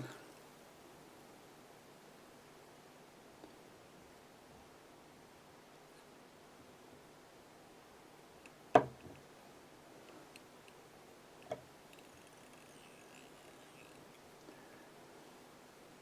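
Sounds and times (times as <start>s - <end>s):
faint ticks: 10.0s - 14.9s
small tools clicking: 11.4s - 14.3s.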